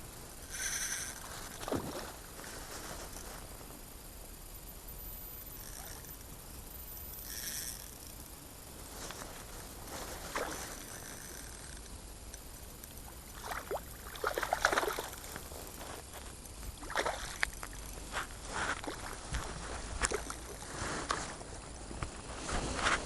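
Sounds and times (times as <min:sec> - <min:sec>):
water splashing and sloshing: 0:01.4 - 0:02.7, 0:13.2 - 0:15.6, 0:16.8 - 0:17.8, 0:18.5 - 0:21.2.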